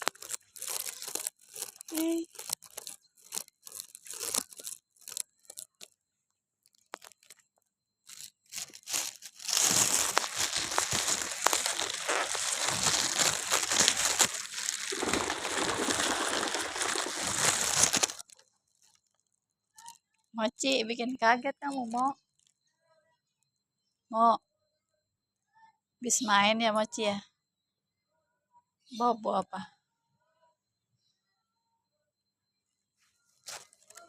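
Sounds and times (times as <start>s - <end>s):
crinkling rustle: 0.0s - 6.0s, 6.6s - 20.0s, 33.4s - 34.0s
crunching clicks: 0.0s - 6.0s, 6.6s - 19.0s.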